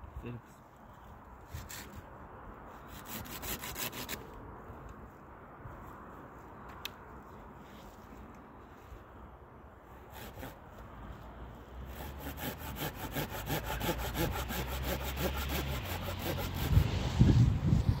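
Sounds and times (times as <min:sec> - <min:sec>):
hand saw cutting wood: 0:01.6 - 0:02.0, 0:02.8 - 0:04.2, 0:09.9 - 0:10.8, 0:11.8 - 0:17.1.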